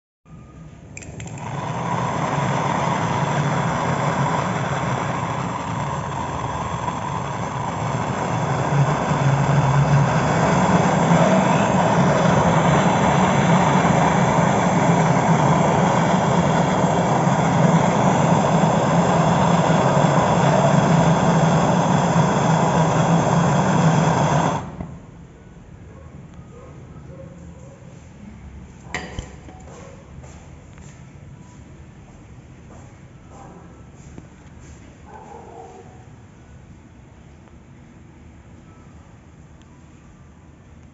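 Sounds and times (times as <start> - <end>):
gas torch flame: 1.0 - 25.2.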